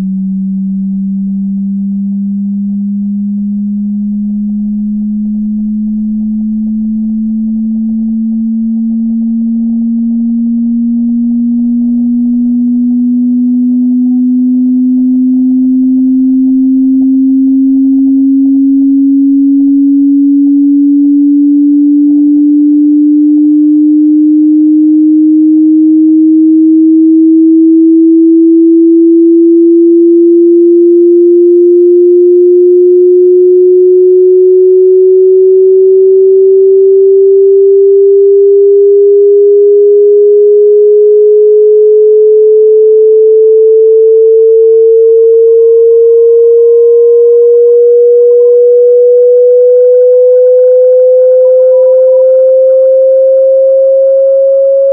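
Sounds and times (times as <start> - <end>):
sine tone rising in pitch: 0.0 - 54.9.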